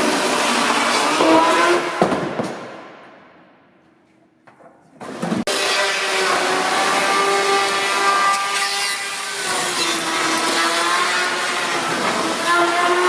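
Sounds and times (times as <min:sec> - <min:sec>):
chainsaw cutting: 0:05.5 - 0:13.0.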